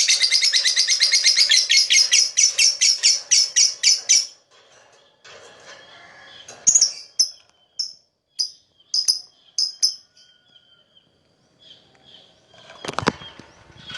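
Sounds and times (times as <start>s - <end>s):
lovebird chirping: 6.7s - 13.9s.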